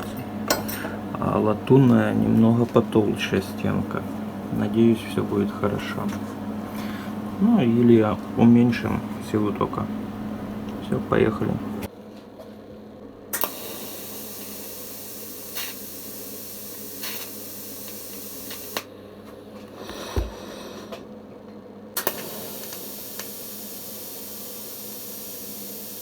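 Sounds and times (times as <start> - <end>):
steady low hum: 0.0 - 26.0
welding arc hissing: 13.4 - 18.9, 22.0 - 26.0.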